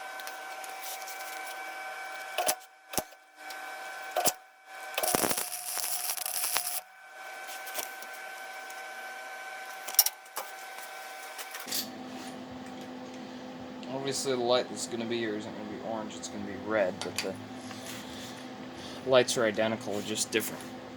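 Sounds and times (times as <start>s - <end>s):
faint hum: 0.0s - 11.0s.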